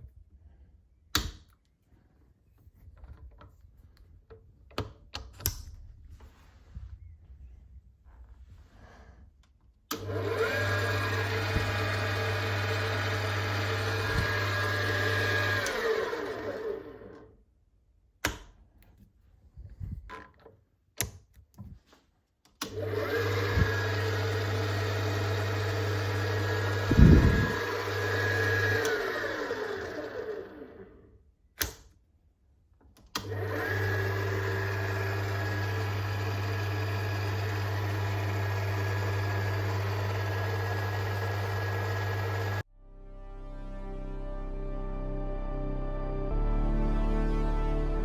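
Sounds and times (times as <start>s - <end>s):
milling machine motor humming: 9.9s - 17.3s, 22.7s - 30.8s, 33.2s - 42.6s
motor spinning down: 10.0s - 17.3s, 22.7s - 31.0s, 33.2s - 42.6s.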